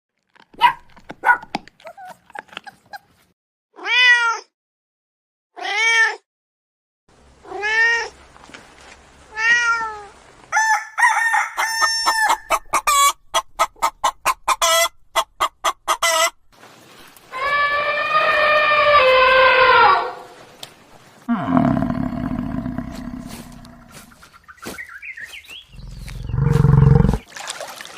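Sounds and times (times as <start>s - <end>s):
domestic animal calls: 17.3s - 20.4s
animal clicks and chirps: 24.5s - 27.2s.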